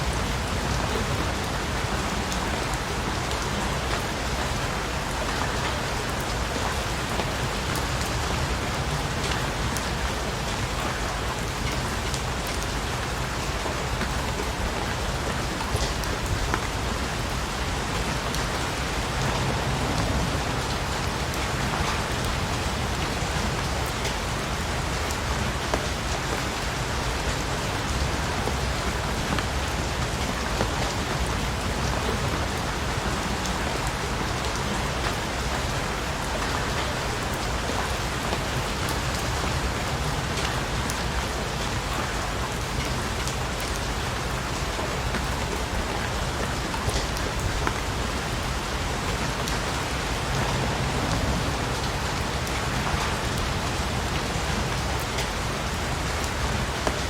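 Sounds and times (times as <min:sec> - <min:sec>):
steady rain hissing: 0:00.0 - 0:57.0.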